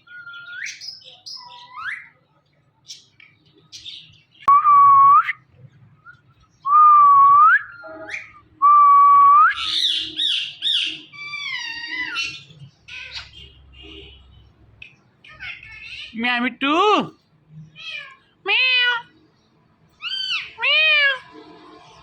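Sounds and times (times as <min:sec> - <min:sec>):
parrot chirps: 0:09.6 - 0:13.6, 0:20.0 - 0:21.2.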